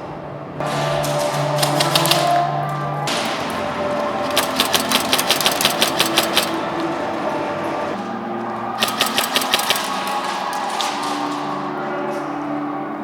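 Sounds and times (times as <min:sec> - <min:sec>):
airsoft gun firing bursts: 0:01.6 - 0:02.5, 0:04.2 - 0:07.2, 0:08.8 - 0:11.2.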